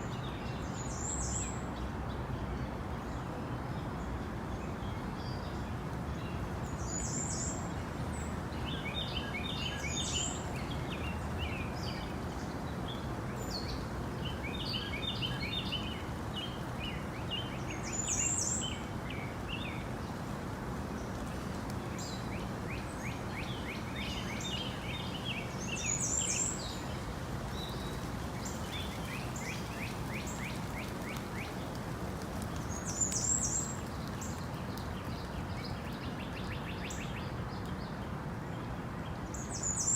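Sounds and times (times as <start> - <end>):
birds chirping: 22.0 - 38.0.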